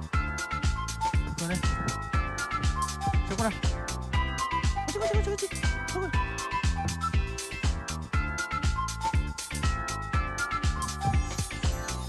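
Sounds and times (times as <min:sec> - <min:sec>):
electronic music with kick drum: 0:00.0 - 0:12.0.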